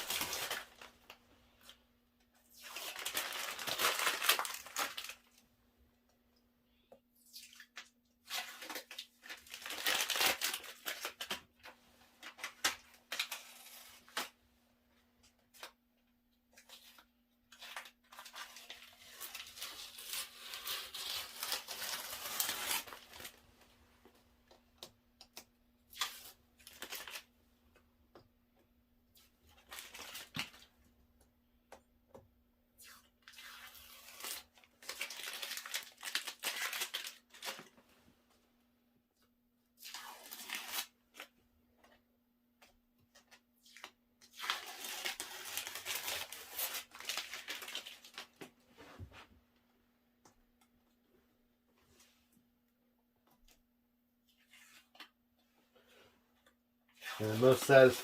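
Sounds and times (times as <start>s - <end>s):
masking tape ripping and crinkling: 0.0s - 1.0s, 2.4s - 5.3s, 7.3s - 11.5s, 17.6s - 23.4s, 25.9s - 27.3s, 32.8s - 37.7s, 39.8s - 41.3s, 43.6s - 48.4s, 57.0s - 58.0s.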